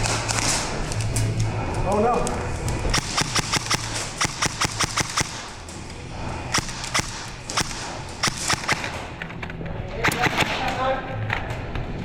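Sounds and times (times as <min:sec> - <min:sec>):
airsoft gun shots cracking: 0:02.9 - 0:05.7, 0:06.5 - 0:09.4, 0:10.0 - 0:10.9.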